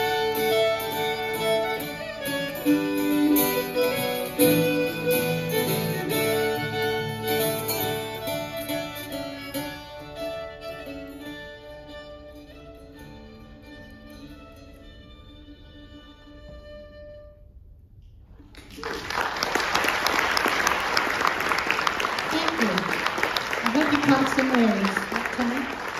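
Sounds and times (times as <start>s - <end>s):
acoustic guitar plucking: 0.0s - 17.3s
fiddle playing folk melody: 0.0s - 17.5s.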